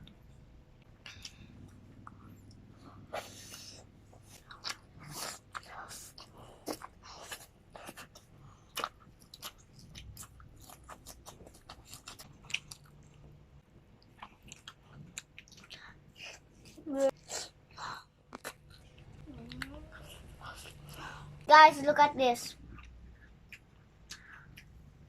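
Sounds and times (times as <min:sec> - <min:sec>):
chewing and mouth smacks: 0:03.5 - 0:13.3, 0:14.0 - 0:17.2, 0:18.3 - 0:21.0, 0:22.6 - 0:25.0.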